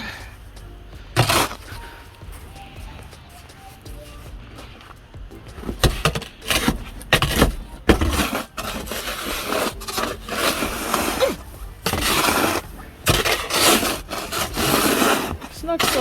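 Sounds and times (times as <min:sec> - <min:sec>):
snow shovel scraping on deck: 0:01.2 - 0:16.0
shovel blade knocking boards: 0:05.4 - 0:16.0.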